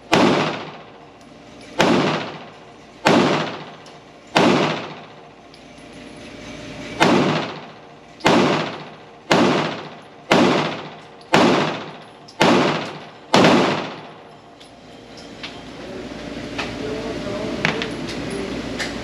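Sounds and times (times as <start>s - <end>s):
pistol shots with echo: 0.1s - 0.9s, 1.8s - 5.1s, 7.0s - 14.2s.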